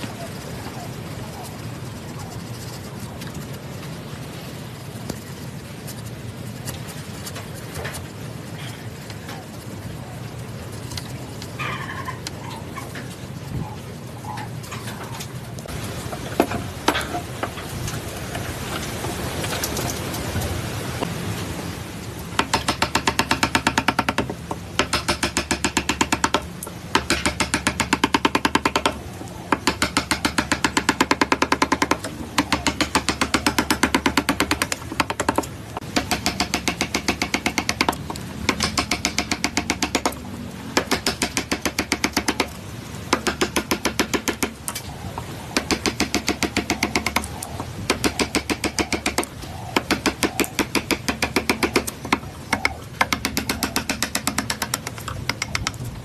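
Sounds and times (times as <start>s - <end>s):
machine knocking rapidly: 22.4s - 40.2s, 47.9s - 55.8s.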